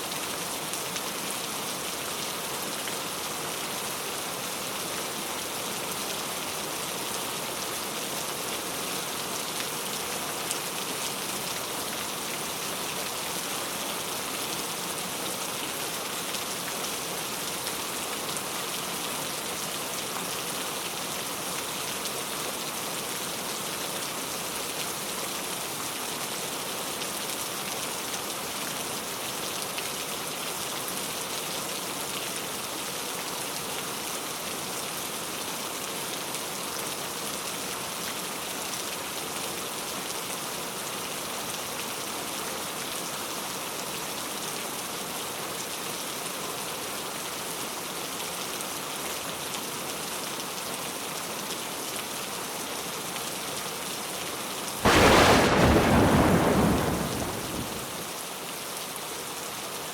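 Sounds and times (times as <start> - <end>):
steady rain hiss: 54.8 - 58.1.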